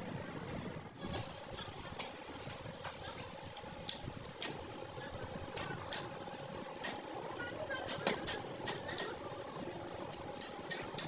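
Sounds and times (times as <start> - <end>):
steady workshop hum: 0.0 - 11.0
sharp metallic clicks: 10.1 - 11.0.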